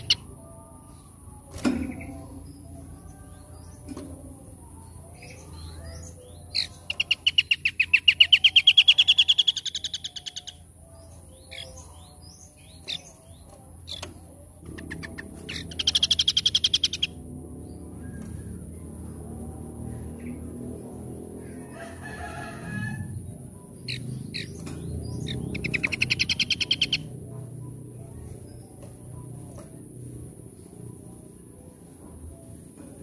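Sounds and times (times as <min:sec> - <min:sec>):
songbird chirps: 0:00.0 - 0:33.0
fast bird trill: 0:06.5 - 0:10.6, 0:14.8 - 0:17.2, 0:25.2 - 0:27.1.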